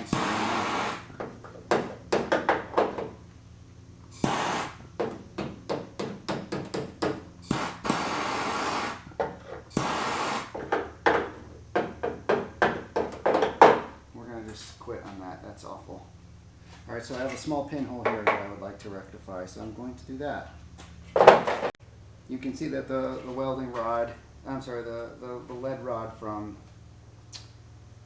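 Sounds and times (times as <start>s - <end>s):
rushing hisses: 0.0s - 1.1s, 4.1s - 4.9s, 7.4s - 9.1s, 9.7s - 10.6s
tool knocks and scrapes: 20.8s - 21.8s.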